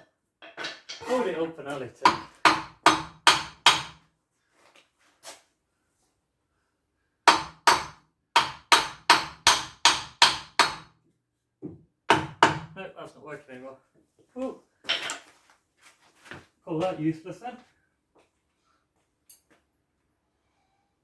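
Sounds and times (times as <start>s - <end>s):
hammer striking metal part: 2.1s - 4.0s, 7.3s - 10.9s.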